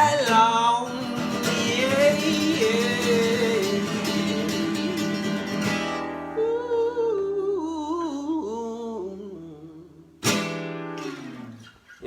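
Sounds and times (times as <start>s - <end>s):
acoustic guitar chord: 0.0s - 7.0s
person singing: 0.0s - 10.2s.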